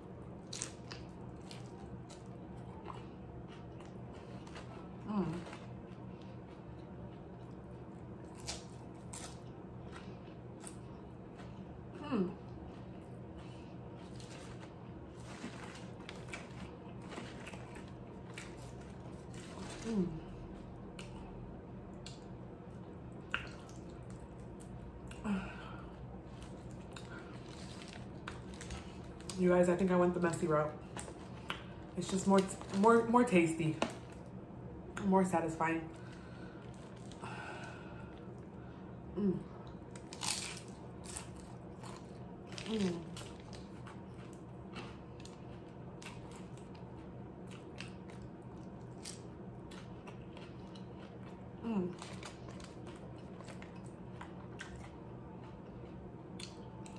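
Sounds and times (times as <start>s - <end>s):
tortilla chips crunching: 0.0s - 34.3s, 36.0s - 38.5s, 39.6s - 56.9s
soft chewing: 0.1s - 29.4s, 30.7s - 32.8s, 35.9s - 56.9s
person humming: 12.0s - 12.4s, 39.1s - 39.6s.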